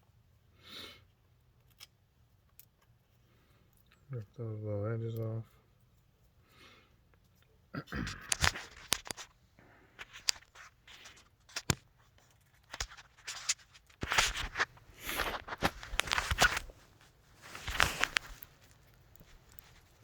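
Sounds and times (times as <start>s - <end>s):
plastic scraping: 12.6s - 20.0s.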